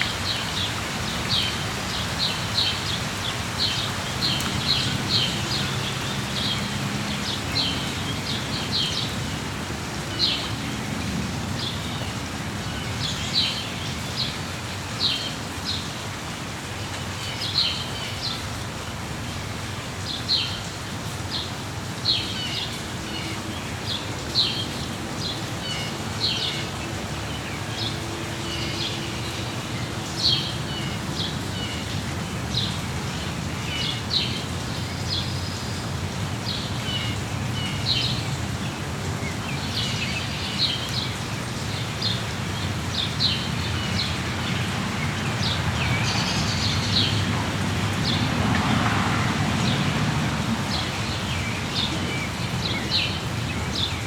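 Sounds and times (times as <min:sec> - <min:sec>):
steady rain: 0:00.0 - 0:54.0
birds chirping: 0:21.3 - 0:54.0.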